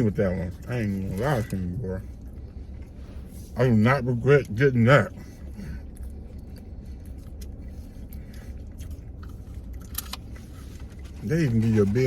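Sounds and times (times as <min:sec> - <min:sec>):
car engine idling: 0:00.0 - 0:12.0
faint clicks and rustles: 0:05.2 - 0:12.0.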